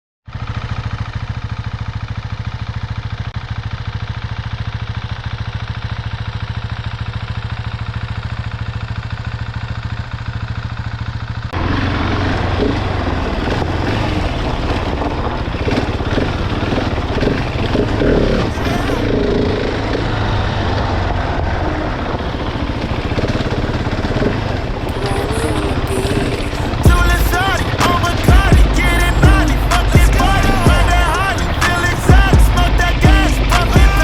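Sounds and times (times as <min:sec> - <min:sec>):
motorcycle engine idling: 0:00.3 - 0:34.0
rough loud engine: 0:00.3 - 0:34.0
rushing noise: 0:24.7 - 0:34.0.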